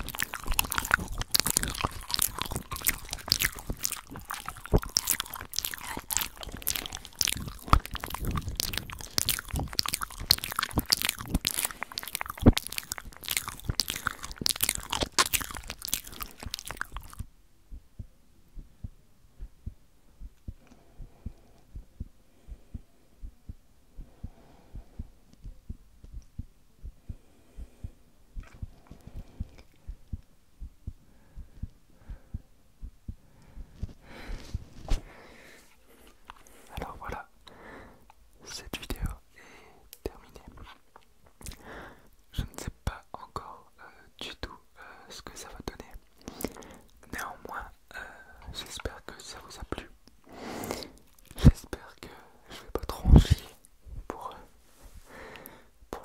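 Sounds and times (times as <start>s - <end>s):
wet mouth clicks and smacks: 0.0s - 17.3s, 28.4s - 30.3s, 34.0s - 39.2s, 39.9s - 43.4s, 45.2s - 54.4s
soft low thumps: 17.2s - 35.1s.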